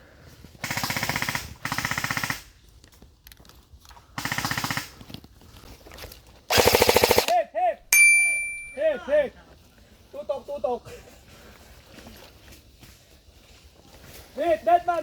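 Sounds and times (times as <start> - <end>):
airsoft gun bursts: 4.2 - 5.0, 6.5 - 7.4.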